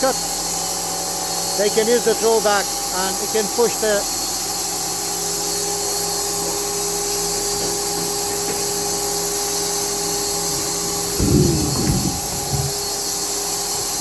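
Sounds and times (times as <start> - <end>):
high hiss: 11.2 - 12.9.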